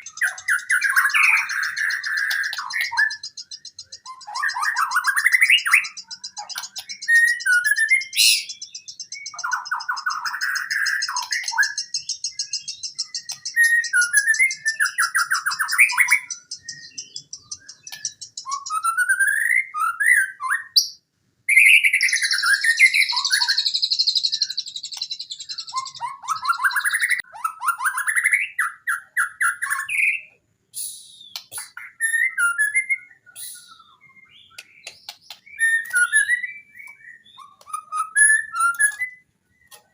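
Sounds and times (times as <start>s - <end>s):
bird singing whistles and trills: 0.0s - 39.9s.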